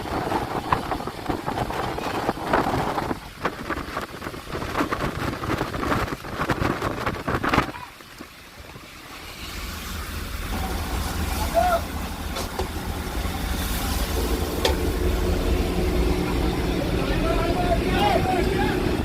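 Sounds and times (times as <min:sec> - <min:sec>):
wind gusting on microphone: 0:00.0 - 0:08.3
rain: 0:00.0 - 0:19.0
sea noise: 0:00.0 - 0:19.0.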